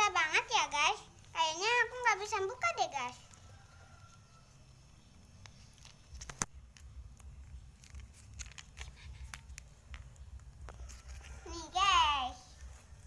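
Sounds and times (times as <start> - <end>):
package being opened by hand: 5.3 - 11.4.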